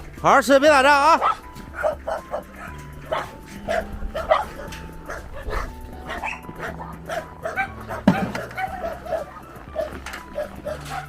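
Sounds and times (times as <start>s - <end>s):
dogs barking and yipping: 0.0s - 11.0s
music of held low notes: 0.0s - 11.0s.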